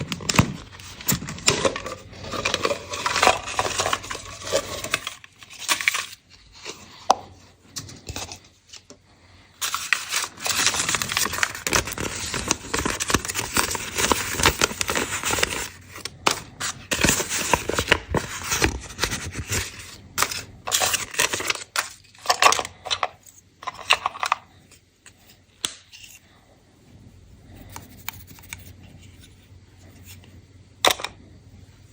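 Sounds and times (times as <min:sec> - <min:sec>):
candy wrapper crinkling: 0:00.0 - 0:07.3, 0:09.6 - 0:24.5.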